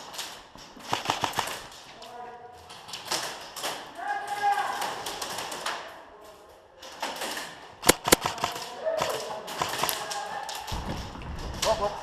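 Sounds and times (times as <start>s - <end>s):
airsoft gunfire cracks: 0.8s - 1.7s, 7.8s - 10.2s.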